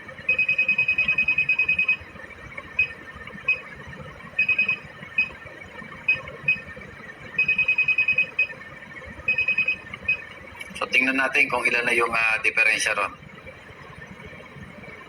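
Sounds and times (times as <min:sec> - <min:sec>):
high-pitched key beeps: 0:00.3 - 0:02.0, 0:02.7 - 0:03.7, 0:04.4 - 0:05.4, 0:06.1 - 0:06.7, 0:07.4 - 0:08.6, 0:09.3 - 0:10.2.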